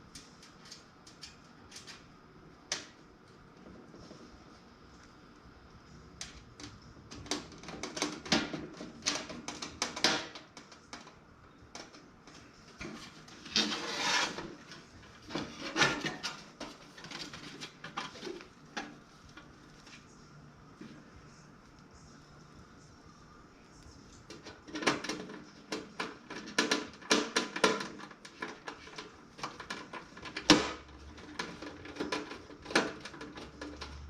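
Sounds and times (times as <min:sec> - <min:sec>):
plastic parts clicking and knocking: 0:06.2 - 0:13.7, 0:24.3 - 0:34.0
parts scraping: 0:12.8 - 0:19.0.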